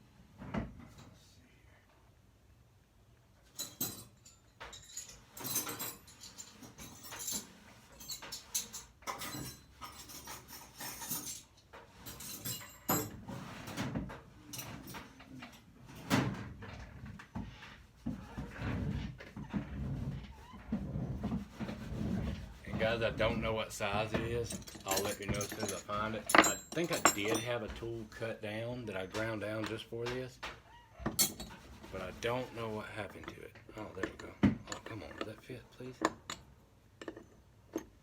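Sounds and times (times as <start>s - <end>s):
metal tools clinking in toolbox: 3.5s - 13.2s, 24.0s - 28.2s, 31.1s - 38.0s.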